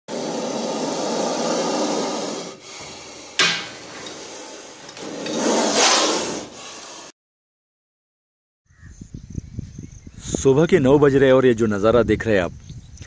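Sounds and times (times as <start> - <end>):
snake hissing: 0.1 - 7.1.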